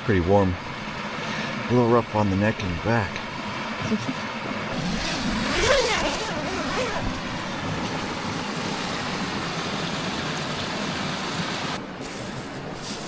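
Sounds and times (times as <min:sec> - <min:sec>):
creek rushing: 0:03.2 - 0:13.0.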